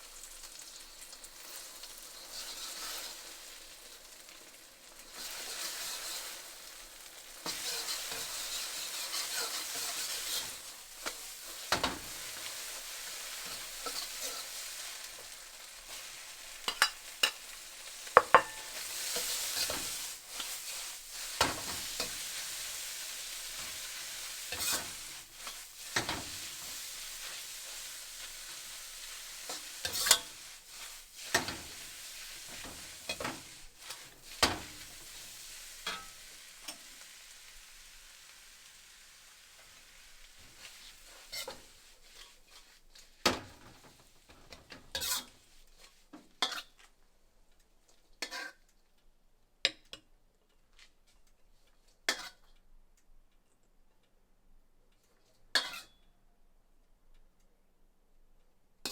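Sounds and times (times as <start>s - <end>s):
food sizzling in a pan: 0.0s - 48.7s, 52.1s - 52.5s, 55.6s - 56.0s
utensil clinking against pan: 18.2s - 18.8s.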